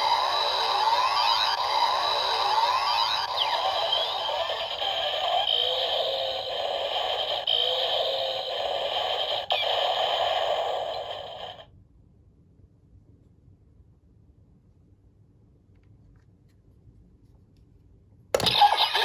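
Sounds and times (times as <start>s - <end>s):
toy belt electronic hissing effect: 0.0s - 11.6s, 18.4s - 19.0s.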